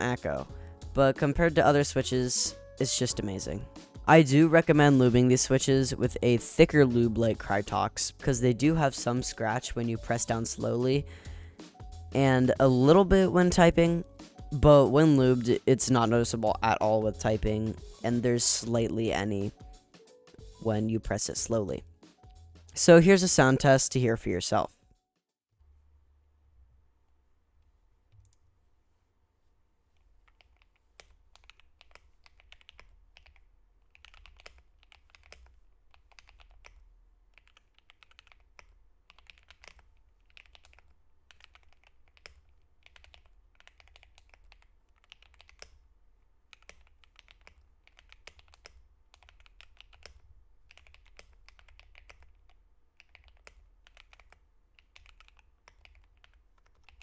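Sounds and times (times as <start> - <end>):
typing on mechanical keyboard: 30.2 - 45.8, 46.5 - 57.0.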